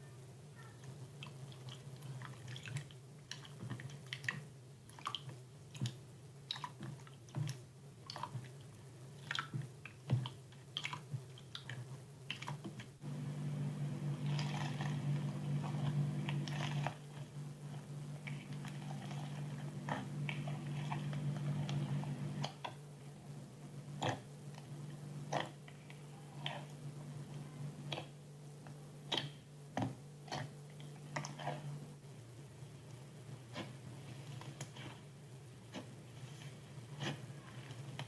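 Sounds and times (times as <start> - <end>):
steady low hum: 13.0 - 38.0.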